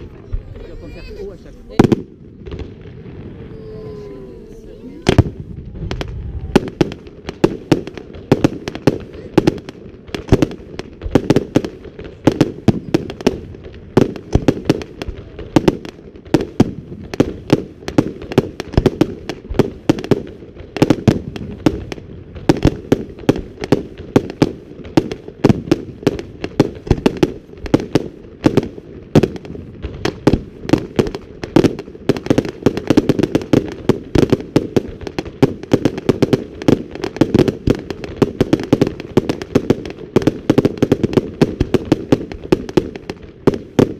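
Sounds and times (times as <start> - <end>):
fireworks barrage: 0.0 - 43.9.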